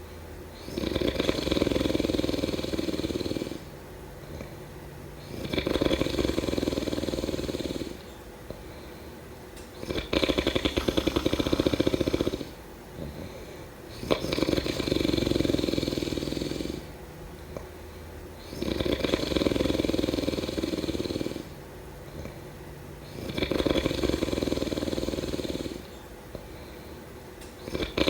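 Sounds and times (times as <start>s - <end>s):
quiet breathing: 0.0s - 28.0s
person snoring: 0.6s - 3.7s, 5.2s - 8.0s, 9.8s - 17.0s, 18.4s - 22.4s, 23.0s - 26.0s, 27.6s - 28.0s.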